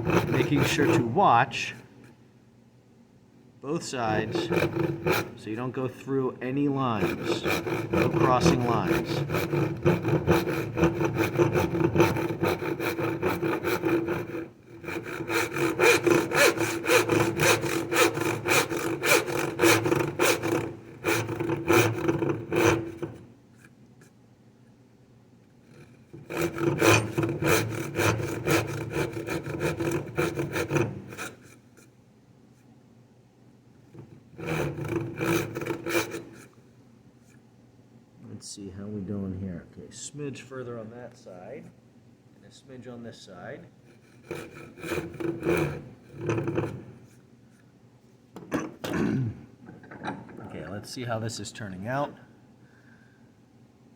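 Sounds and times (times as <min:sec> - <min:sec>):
hand saw cutting wood: 0:00.0 - 0:01.4, 0:04.0 - 0:05.7, 0:06.6 - 0:23.3, 0:25.6 - 0:31.9, 0:33.9 - 0:36.6, 0:43.8 - 0:47.2.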